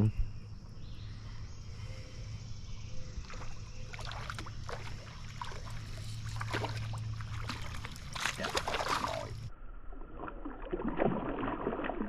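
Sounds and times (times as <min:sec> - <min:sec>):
steady low hum: 0:00.0 - 0:09.6
fish splashing in water: 0:03.2 - 0:09.5, 0:10.1 - 0:12.0.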